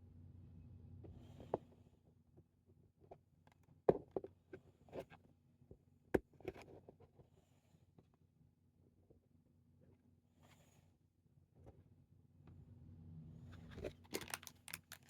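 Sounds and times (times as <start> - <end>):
faint room hum: 0.0 - 15.0
cards and wrappers handled: 13.6 - 15.0.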